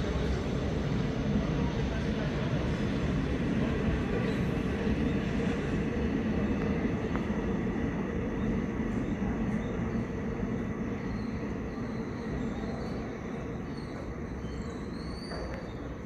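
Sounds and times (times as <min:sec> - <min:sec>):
train rumbling along track: 0:00.0 - 0:16.0.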